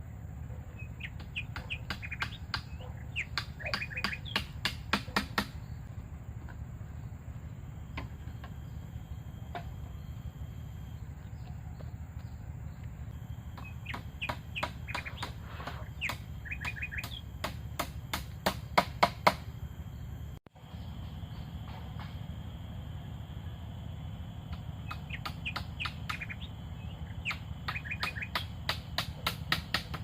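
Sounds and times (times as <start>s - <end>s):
insect hum: 0.0s - 30.0s
birds chirping: 0.2s - 22.3s, 23.9s - 30.0s
sharp knocks: 1.2s - 5.6s, 13.5s - 19.5s, 27.2s - 30.0s.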